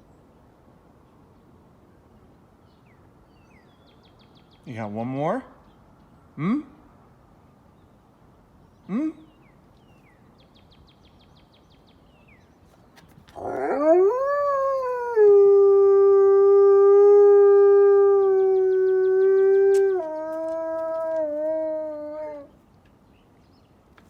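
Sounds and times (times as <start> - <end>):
wolf howling: 13.3 - 22.5.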